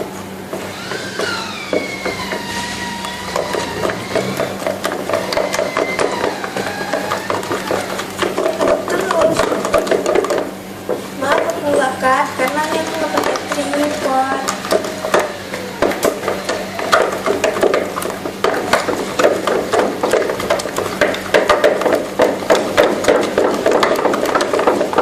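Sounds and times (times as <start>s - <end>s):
hammer blows: 0.7s - 8.2s.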